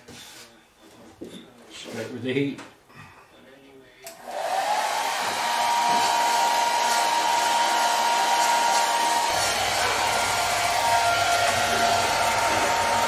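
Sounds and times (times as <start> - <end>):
hot-air blower running: 4.1 - 13.0.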